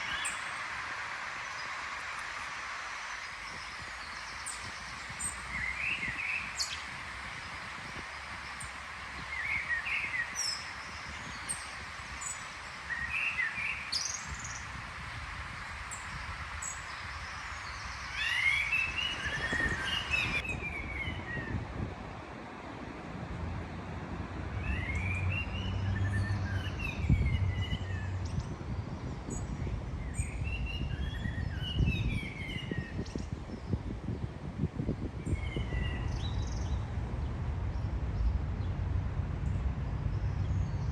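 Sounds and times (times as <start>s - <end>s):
songbird singing: 0.0s - 21.8s, 24.4s - 40.9s
steady background hiss: 0.0s - 27.0s.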